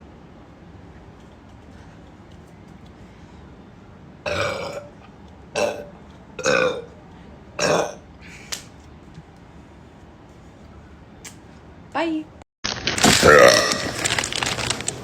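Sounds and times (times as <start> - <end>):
woman burping: 4.3 - 4.9, 5.6 - 6.9, 7.6 - 8.0.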